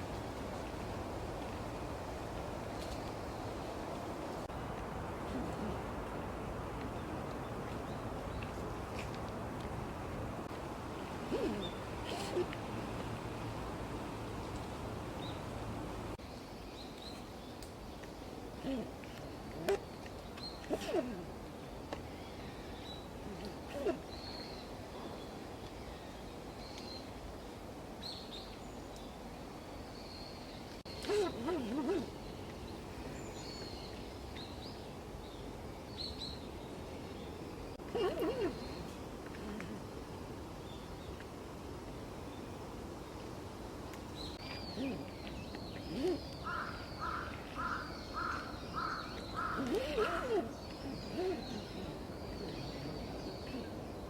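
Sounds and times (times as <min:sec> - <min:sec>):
outdoor background noise: 0:00.0 - 0:54.0
birds chirping: 0:44.2 - 0:54.0
harsh repeated bird calls: 0:46.0 - 0:51.6.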